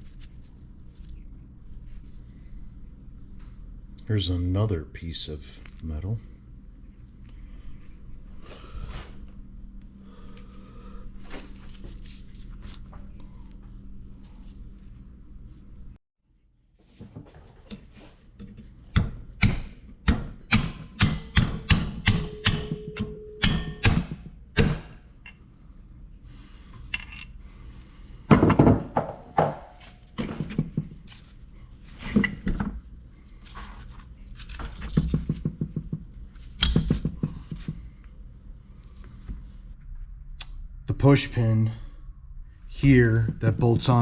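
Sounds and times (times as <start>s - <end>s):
metal strikes with ringing: 20.5s - 25.0s.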